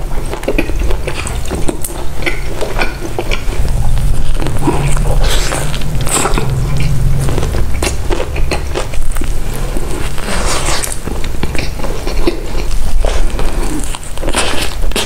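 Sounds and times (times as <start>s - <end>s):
wet chewing and biting: 0.0s - 3.6s, 10.2s - 15.0s.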